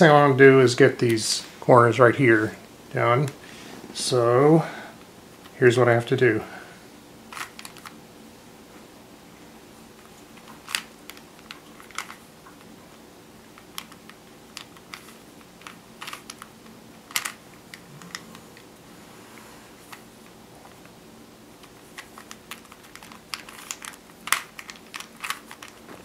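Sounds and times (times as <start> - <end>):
puzzle cube clicking: 13.6 - 16.5, 17.1 - 18.4, 21.6 - 25.9.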